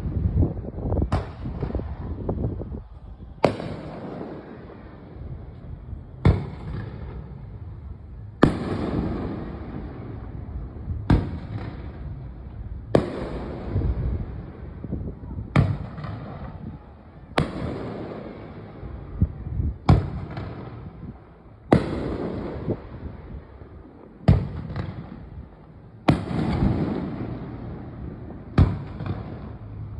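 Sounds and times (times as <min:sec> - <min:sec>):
small firework pops: 0:01.0 - 0:02.2, 0:03.4 - 0:04.5, 0:06.2 - 0:07.3, 0:11.0 - 0:14.0, 0:15.5 - 0:16.7, 0:17.4 - 0:18.0, 0:24.2 - 0:25.4, 0:28.5 - 0:29.7.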